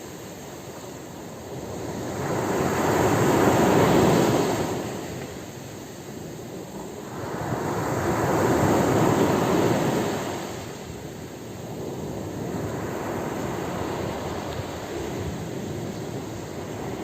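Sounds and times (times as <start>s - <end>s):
ocean waves crashing: 12.0s - 17.0s.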